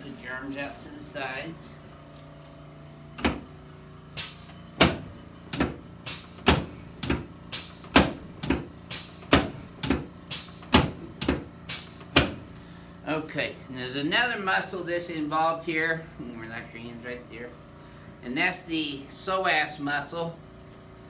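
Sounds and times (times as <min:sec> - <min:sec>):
sharp short knocks: 0:04.8 - 0:05.8, 0:06.4 - 0:10.1.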